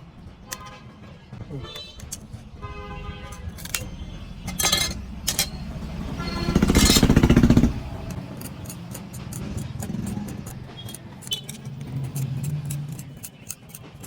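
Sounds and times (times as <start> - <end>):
road traffic rumbling: 1.1 - 14.0
vehicle engine running close: 3.2 - 14.0.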